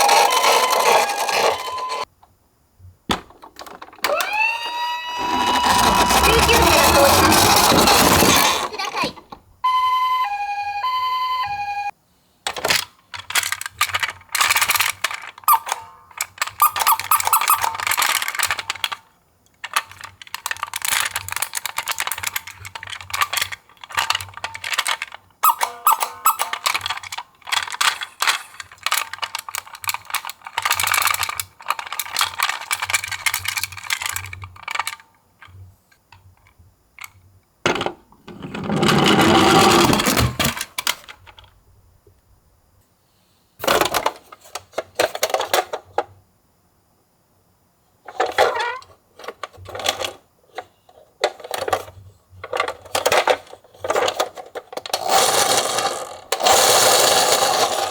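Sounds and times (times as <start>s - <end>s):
toy cars rattling and clattering: 0.0s - 2.1s, 5.2s - 9.2s, 12.5s - 41.5s, 43.6s - 46.1s, 48.0s - 57.9s
two-tone ambulance siren: 4.1s - 6.3s, 9.6s - 11.9s.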